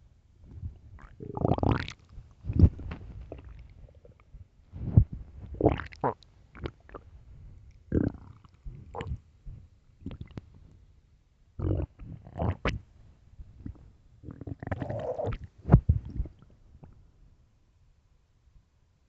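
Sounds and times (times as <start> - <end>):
stomach growling and gurgling: 0.5 - 7.2, 7.8 - 10.5, 11.6 - 12.9, 13.6 - 16.5.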